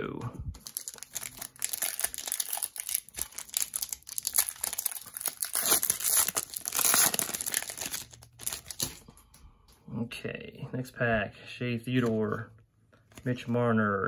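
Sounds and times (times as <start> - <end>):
foil wrapper crinkling and tearing: 0.6 - 9.0.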